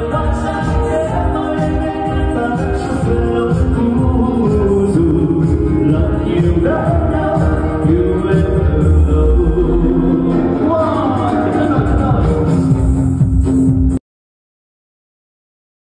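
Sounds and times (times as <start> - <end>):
person singing long bending notes: 0.0 - 12.6
live band playing: 0.0 - 14.0.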